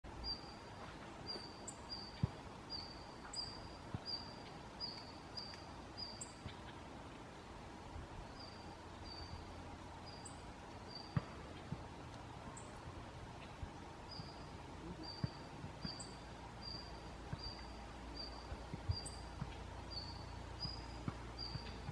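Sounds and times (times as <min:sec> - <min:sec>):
bird call notes: 0:13.4 - 0:21.9.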